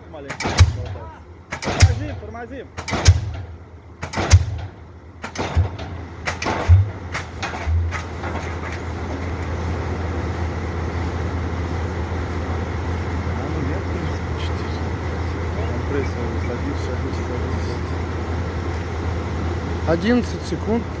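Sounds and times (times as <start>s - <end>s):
low engine drone: 0.0s - 21.0s
pile hammer blows: 0.2s - 9.4s.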